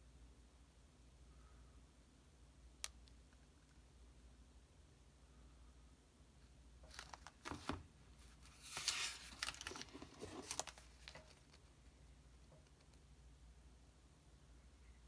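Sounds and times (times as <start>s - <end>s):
paper page turning: 6.9s - 11.6s.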